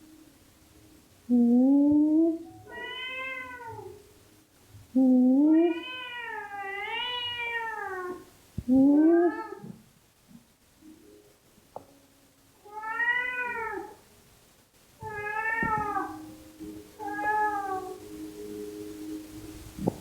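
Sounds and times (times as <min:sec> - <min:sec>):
cat meowing: 0:01.9 - 0:04.0, 0:05.4 - 0:09.8, 0:12.6 - 0:14.0, 0:15.0 - 0:16.4, 0:17.0 - 0:18.1.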